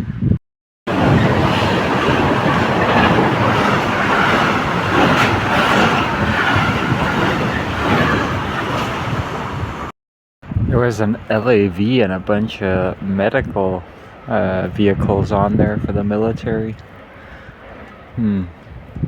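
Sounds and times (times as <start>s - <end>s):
freight train wheels on track: 0.9s - 9.9s, 16.6s - 18.7s.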